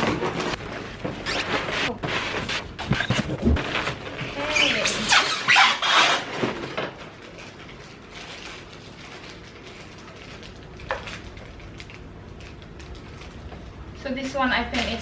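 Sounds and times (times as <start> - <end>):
packaging scraping and squeaking: 0.0 - 6.6.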